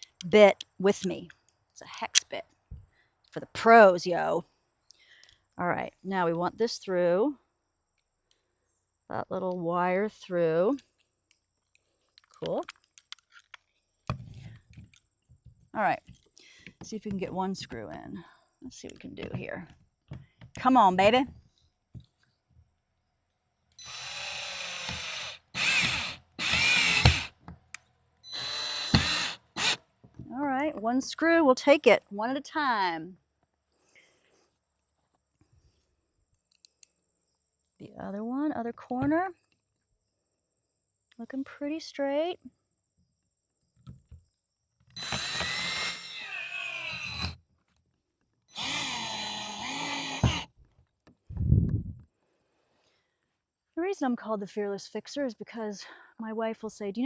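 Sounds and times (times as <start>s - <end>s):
power drill driving screw into wood: 23.8s - 27.4s, 28.2s - 29.8s, 44.9s - 47.4s, 48.5s - 50.5s.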